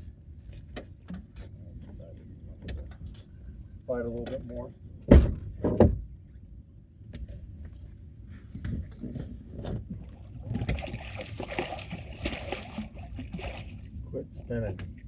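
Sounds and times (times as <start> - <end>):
fish splashing in water: 10.4 - 14.0.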